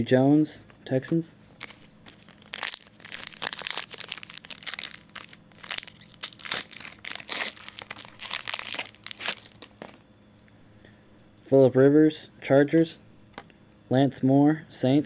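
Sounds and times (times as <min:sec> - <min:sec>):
card wrapper crinkling and rustling: 0:01.4 - 0:10.1.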